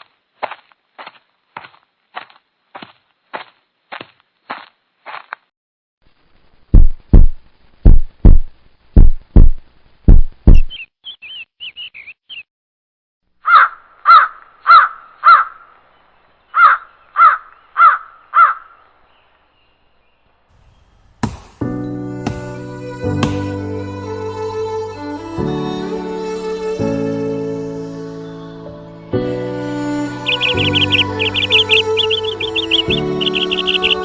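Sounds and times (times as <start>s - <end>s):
crow cawing: 13.4s - 15.6s, 16.6s - 18.8s, 30.2s - 34.0s
faint high chirps: 30.2s - 34.0s.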